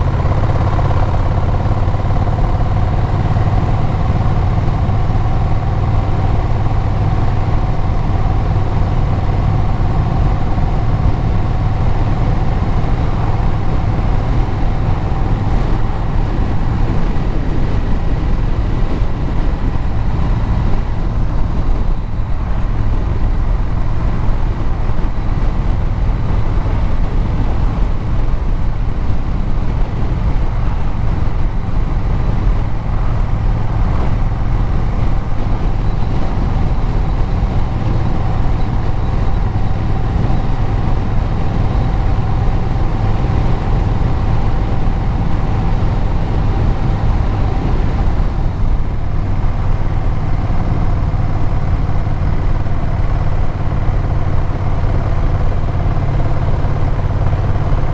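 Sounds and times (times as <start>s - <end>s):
road noise: 0.0s - 57.9s
vehicle engine running: 0.0s - 57.9s.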